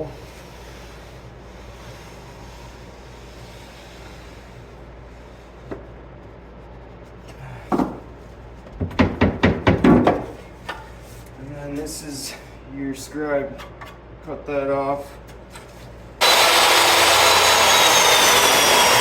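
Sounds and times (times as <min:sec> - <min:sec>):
wooden board knocking: 0:08.7 - 0:10.3.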